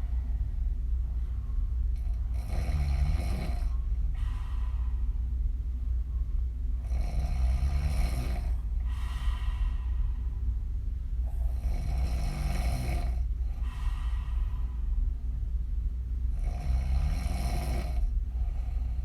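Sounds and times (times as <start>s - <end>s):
steady low hum: 0.0s - 19.0s
woman snoring: 2.0s - 3.8s, 6.8s - 8.7s, 11.3s - 13.3s, 16.3s - 18.1s.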